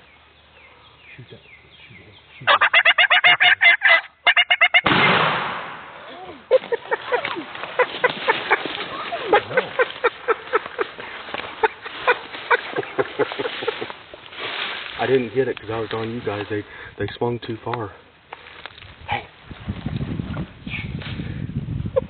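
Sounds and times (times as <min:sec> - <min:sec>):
turkey clucking: 0:02.4 - 0:04.9, 0:06.5 - 0:10.6
turkey gobbling: 0:02.4 - 0:04.9, 0:06.7 - 0:10.6.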